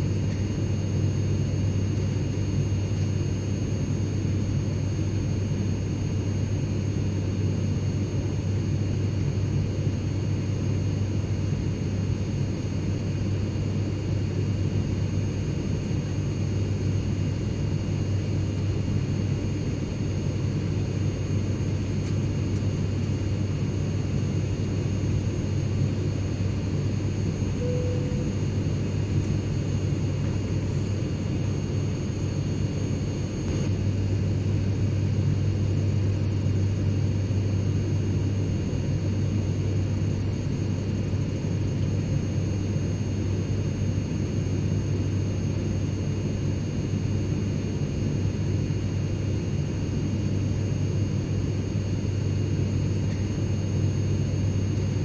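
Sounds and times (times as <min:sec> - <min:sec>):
jet engine whine: 0:00.0 - 0:55.0
jet cabin rumble: 0:20.8 - 0:33.8.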